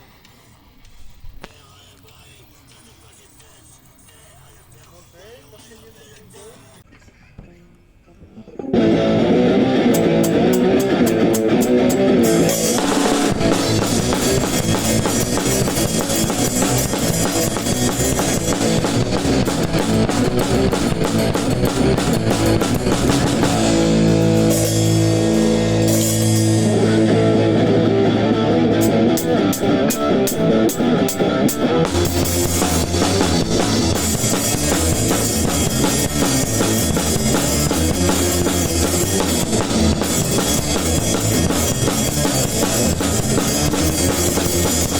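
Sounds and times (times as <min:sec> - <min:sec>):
electric guitar: 0:08.4 - 0:44.9
bass guitar: 0:08.6 - 0:44.9
drum kit: 0:08.6 - 0:44.9.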